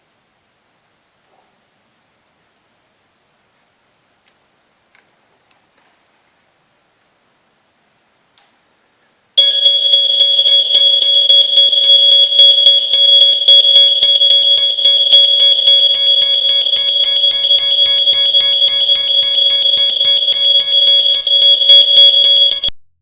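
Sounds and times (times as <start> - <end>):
high-pitched pulsing alarm tone: 9.4 - 22.8.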